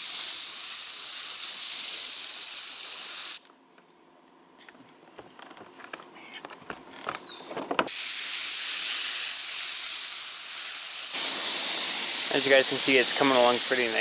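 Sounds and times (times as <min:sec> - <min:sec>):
spray gun hissing: 0:00.0 - 0:03.4, 0:07.9 - 0:14.0.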